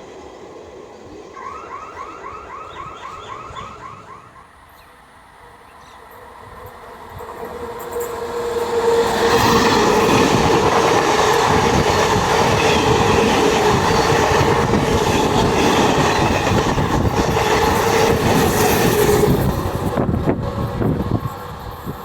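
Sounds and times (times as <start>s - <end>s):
steady high tone: 1.3s - 4.6s
train wheels clattering over rails: 7.2s - 22.0s.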